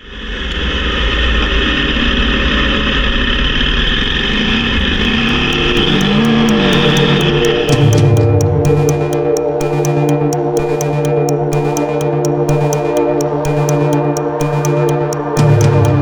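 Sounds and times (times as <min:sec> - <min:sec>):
electronic music with beat: 0:05.0 - 0:16.0
motorcycle engine running: 0:05.1 - 0:16.0.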